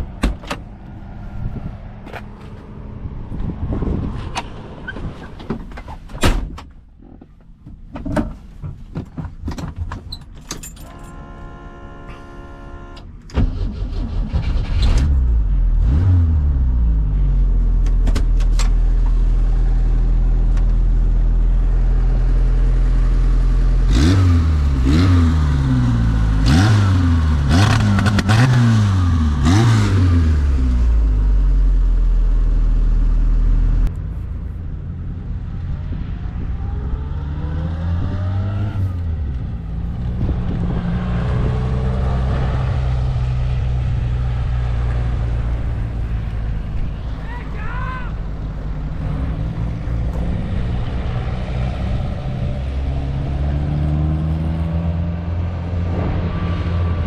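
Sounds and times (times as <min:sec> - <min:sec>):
car engine starting and idling: 0:00.0 - 0:57.0
engine revving: 0:13.4 - 0:20.5, 0:21.4 - 0:33.9, 0:35.4 - 0:47.2, 0:48.6 - 0:57.0.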